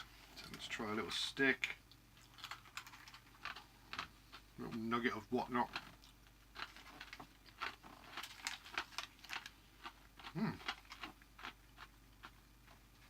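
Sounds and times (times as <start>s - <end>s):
crunchy snack chewing: 2.2s - 4.4s, 5.7s - 13.0s
low voice hum: 10.3s - 10.7s.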